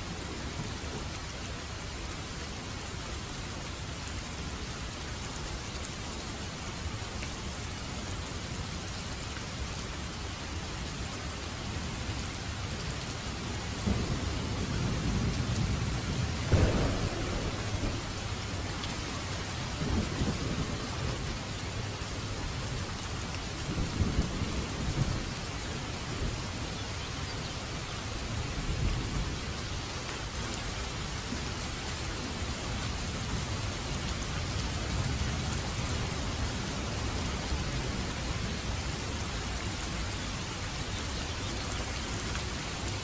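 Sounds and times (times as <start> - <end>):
steady rain: 0.0 - 43.0
rolling thunder: 13.8 - 22.9
thunder crack: 14.9 - 21.2.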